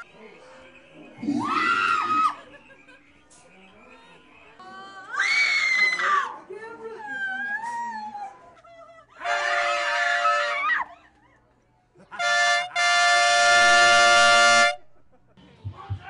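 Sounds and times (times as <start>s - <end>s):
loud blaring horn chords: 9.2s - 10.6s, 12.2s - 14.9s.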